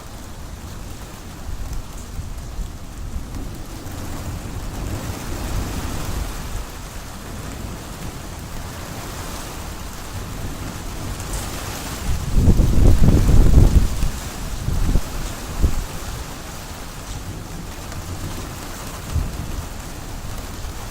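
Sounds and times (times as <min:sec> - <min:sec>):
low rumble of thunder: 0:00.0 - 0:20.9
steady rain falling: 0:00.0 - 0:20.9.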